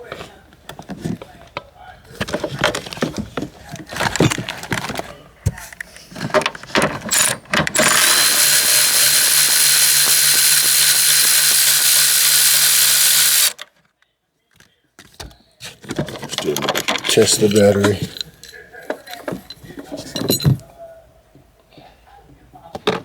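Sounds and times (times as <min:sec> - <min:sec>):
cordless power tool whining: 0:07.1 - 0:13.6.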